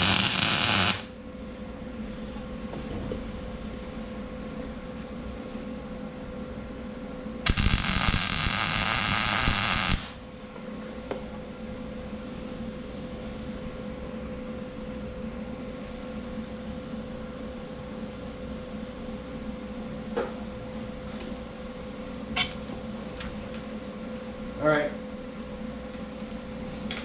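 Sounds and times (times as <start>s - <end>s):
welding arc hissing: 0.0s - 1.1s, 7.5s - 10.2s
steady shop hum: 0.0s - 14.4s.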